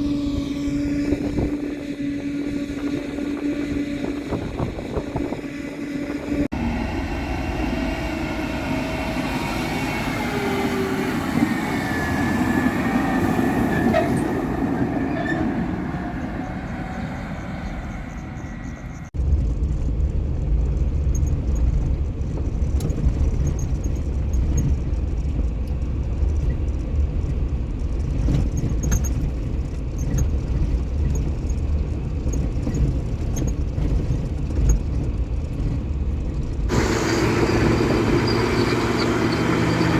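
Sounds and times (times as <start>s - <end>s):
deep engine rumble: 0.0s - 39.9s
engine and driveline whine: 0.0s - 39.9s
rattles and clicks: 17.6s - 36.7s.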